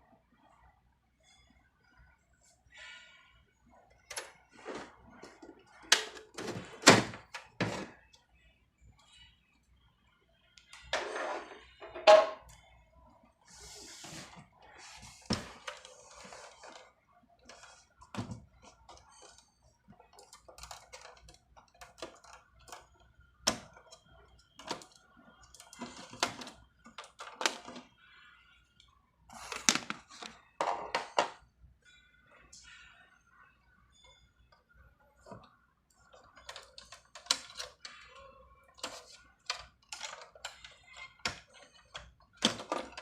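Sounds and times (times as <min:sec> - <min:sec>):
clicks and knocks of pc case parts: 0:05.9 - 0:08.0.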